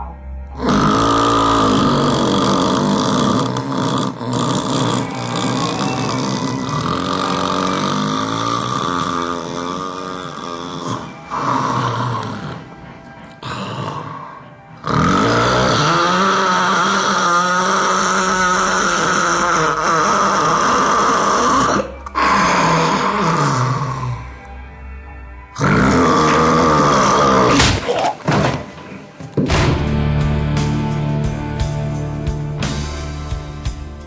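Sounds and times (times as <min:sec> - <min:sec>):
loud snoring: 0:00.5 - 0:12.8, 0:13.4 - 0:24.4, 0:25.6 - 0:27.6.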